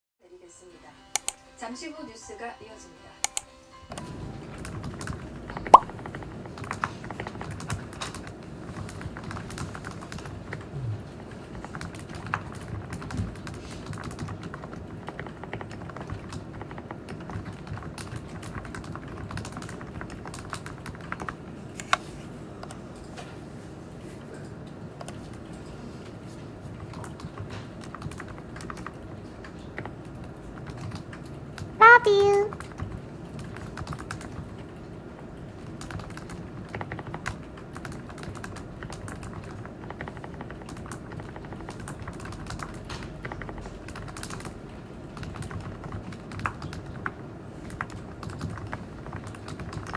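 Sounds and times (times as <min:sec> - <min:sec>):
keyboard typing: 0:01.2 - 0:01.4.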